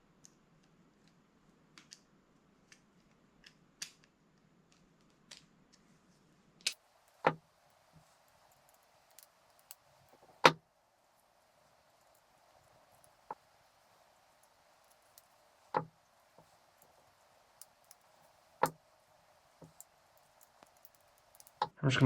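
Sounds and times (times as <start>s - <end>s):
small metal parts clicking: 19.6s - 21.7s.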